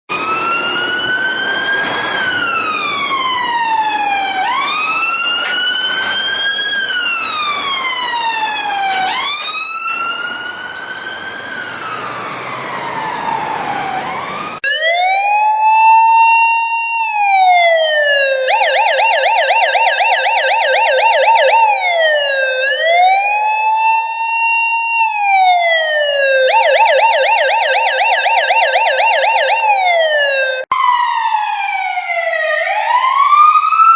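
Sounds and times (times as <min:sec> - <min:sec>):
siren wailing: 0:00.1 - 0:33.9
siren yelp warbling: 0:12.9 - 0:33.9.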